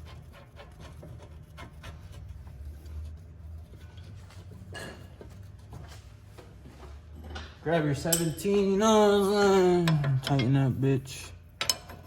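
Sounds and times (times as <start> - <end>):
metal brake parts clicking: 11.6 - 12.0.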